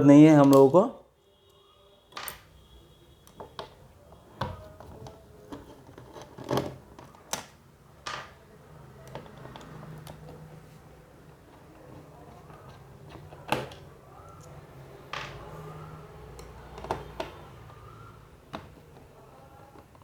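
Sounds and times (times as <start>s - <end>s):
plastic and metal parts clicking: 3.2s - 7.6s.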